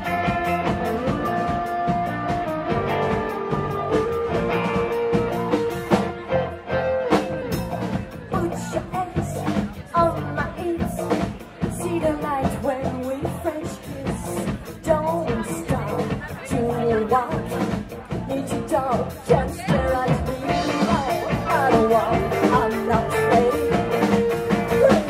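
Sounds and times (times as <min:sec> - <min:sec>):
live pop-rock band: 0:00.0 - 0:25.0
person singing: 0:08.1 - 0:25.0.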